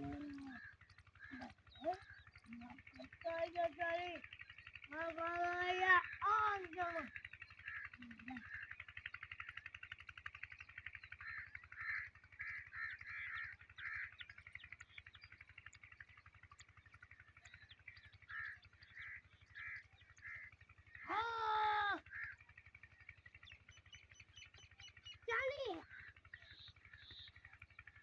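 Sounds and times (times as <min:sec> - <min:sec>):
steady low hum: 0:00.0 - 0:09.6
crow caw: 0:00.0 - 0:14.9, 0:17.4 - 0:27.8
birds calling in bursts: 0:00.0 - 0:28.0.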